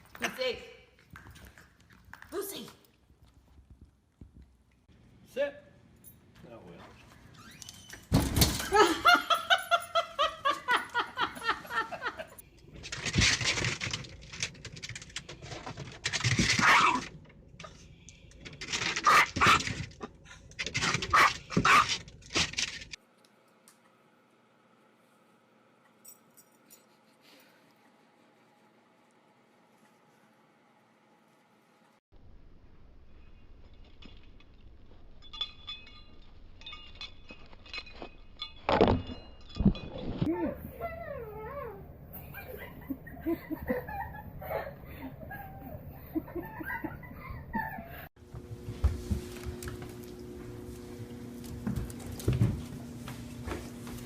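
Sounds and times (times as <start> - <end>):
person laughing: 8.7 - 12.4, 42.2 - 48.1
metallic clinking and jingling: 33.0 - 40.4.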